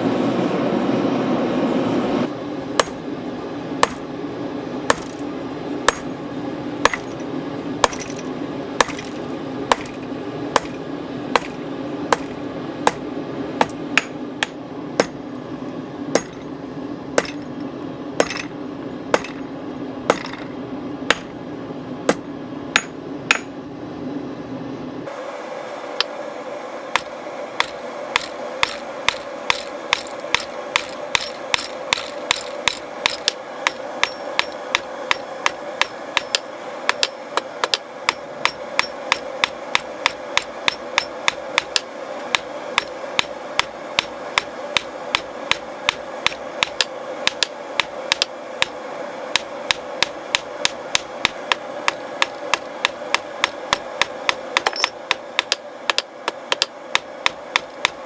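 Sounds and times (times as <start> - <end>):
hammer striking metal on anvil: 2.8 - 3.0, 3.8 - 4.1, 4.9 - 5.2, 5.9 - 6.1, 6.9 - 7.2, 7.8 - 10.8, 11.4 - 15.2, 16.2 - 16.5, 17.2 - 17.6, 18.2 - 18.5, 19.2 - 19.5, 20.1 - 20.5, 21.1 - 21.4, 22.1 - 23.6, 27.0 - 58.0.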